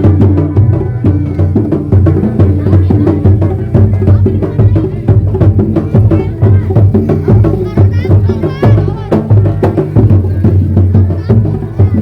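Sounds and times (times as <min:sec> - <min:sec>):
drums and percussion beat: 0:00.0 - 0:12.0.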